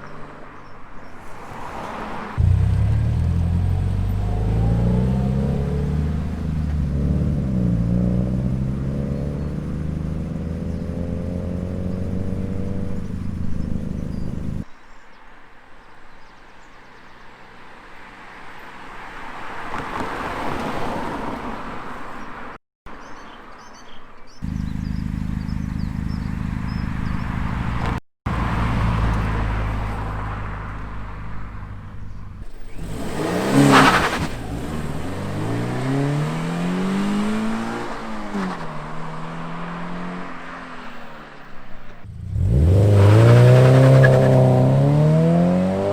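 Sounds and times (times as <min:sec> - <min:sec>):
car engine idling and revving: 0:02.0 - 0:14.7, 0:24.4 - 0:45.9.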